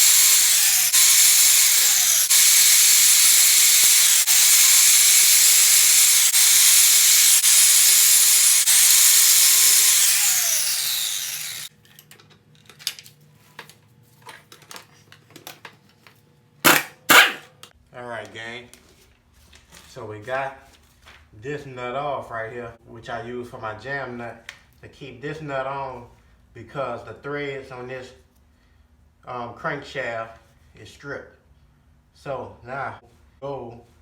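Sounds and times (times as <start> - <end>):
power tool running hard: 0.0 - 11.7
light clicks and handling noises: 11.8 - 16.2.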